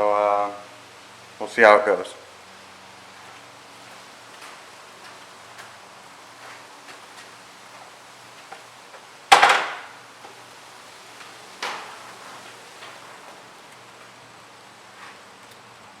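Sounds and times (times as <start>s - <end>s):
dirt bike kick-start kicks: 9.3s - 10.0s.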